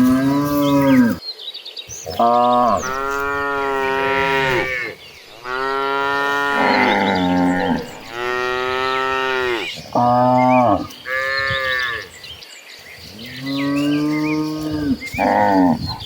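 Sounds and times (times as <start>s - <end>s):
cattle mooing: 2.2s - 12.1s.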